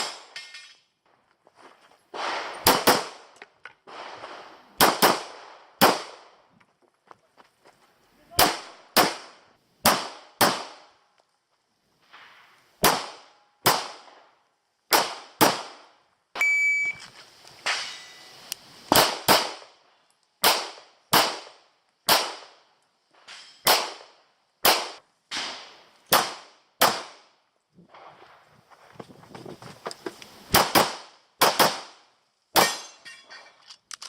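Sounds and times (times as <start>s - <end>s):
pistol shots: 2.2s - 3.2s, 4.8s - 6.2s, 8.4s - 10.9s, 12.8s - 14.1s, 14.9s - 15.8s, 18.9s - 19.7s, 20.4s - 22.6s, 23.6s - 27.2s, 30.5s - 31.9s
short ringing tone: 16.4s - 17.0s.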